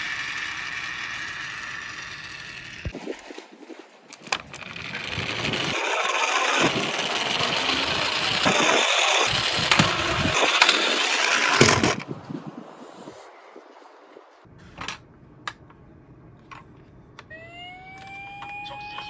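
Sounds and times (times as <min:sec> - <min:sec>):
toy cars clicking together: 0:00.0 - 0:03.0, 0:04.2 - 0:12.0
toy cars rolling down track: 0:00.0 - 0:03.0, 0:04.2 - 0:12.0.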